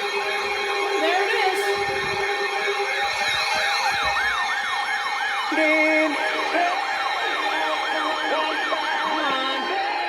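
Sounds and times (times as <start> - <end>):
electronic yelp siren: 0.0 - 10.0.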